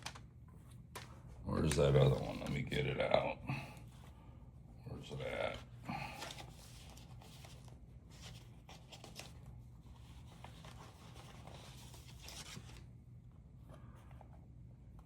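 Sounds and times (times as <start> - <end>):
paper rustling and sliding: 6.0 - 12.9.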